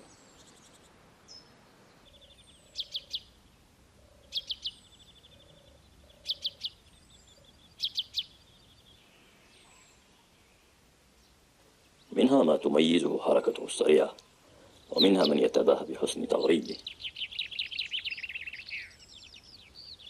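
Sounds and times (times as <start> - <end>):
thin downward bird whistles: 17.1 - 19.4.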